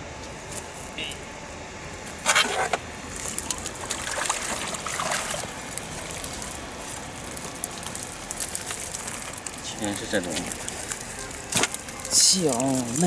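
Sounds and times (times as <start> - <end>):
water dripping and trickling: 3.4 - 9.7.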